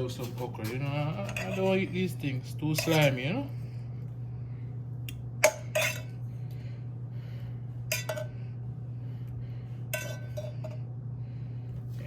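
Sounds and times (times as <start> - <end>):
steady low hum: 0.0 - 12.0
cutlery clinking against plate: 1.2 - 1.8, 2.7 - 3.2, 5.4 - 6.1.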